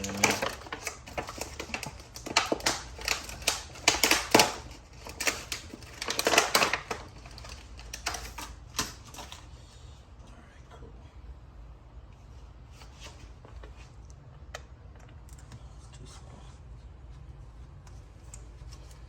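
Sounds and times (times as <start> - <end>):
plastic parts clicking and rattling: 0.0 - 9.5.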